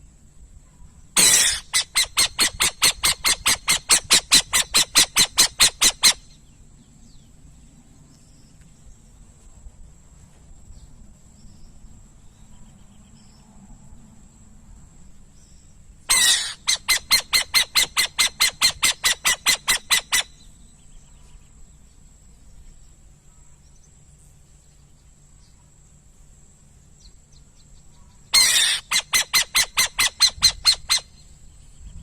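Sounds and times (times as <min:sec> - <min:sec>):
owl chattering: 0:01.2 - 0:06.4, 0:16.1 - 0:20.5, 0:28.3 - 0:31.3.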